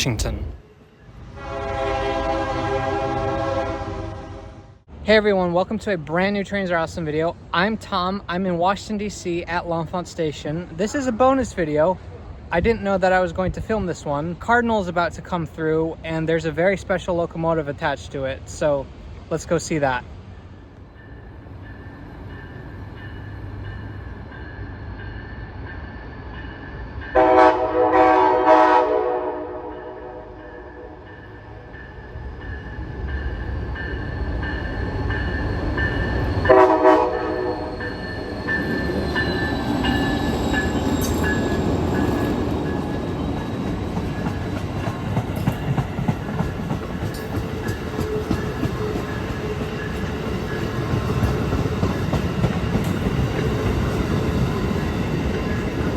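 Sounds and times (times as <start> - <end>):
train rumbling past: 0.0 - 55.9
train air horn blast: 1.3 - 4.8, 27.2 - 31.0, 36.5 - 37.7
wheels clicking over rail joints: 38.5 - 55.9.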